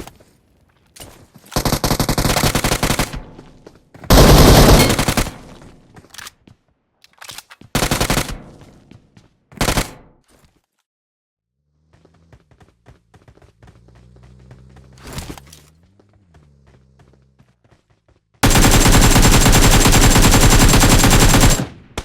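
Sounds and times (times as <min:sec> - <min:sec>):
rapid sharp bangs: 0:18.4 - 0:22.0.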